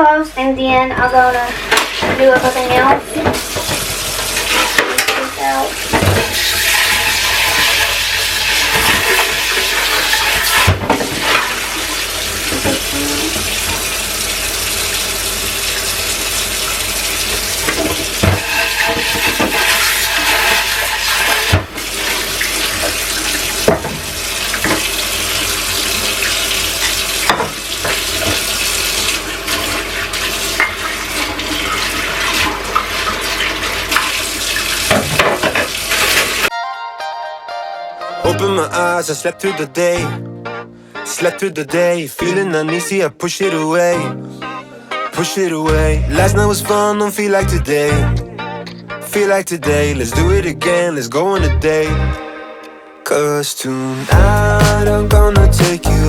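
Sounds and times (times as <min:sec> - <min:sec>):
dishes clinking against sink: 0:01.7 - 0:11.7, 0:17.6 - 0:21.8, 0:30.6 - 0:30.9
tap running into sink: 0:05.8 - 0:07.9, 0:17.3 - 0:25.0, 0:26.2 - 0:28.6, 0:34.8 - 0:36.3.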